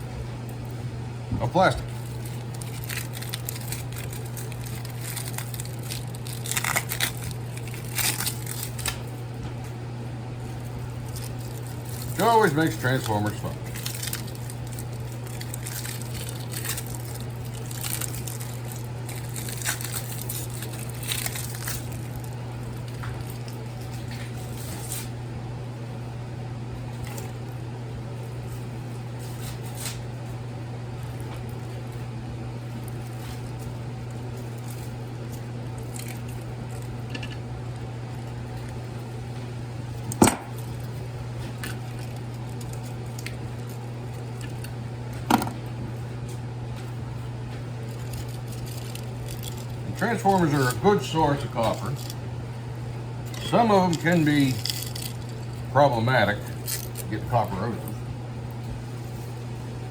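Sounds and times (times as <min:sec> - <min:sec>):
steady low hum: 0:00.0 - 0:59.9
wire crackling and clicking: 0:01.8 - 0:09.2, 0:13.0 - 0:25.1, 0:53.2 - 0:55.6.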